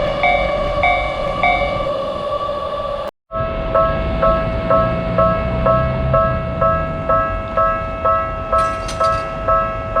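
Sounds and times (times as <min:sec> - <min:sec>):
railroad crossing bell clanging: 0:03.3 - 0:10.0.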